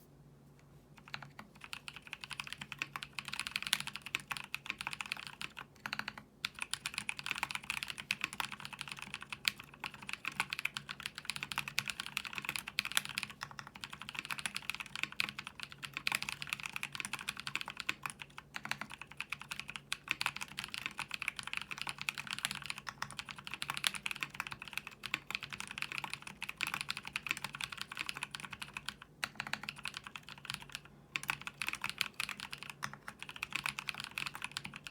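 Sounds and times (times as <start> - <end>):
fast mechanical keyboard typing: 1.0 - 34.9.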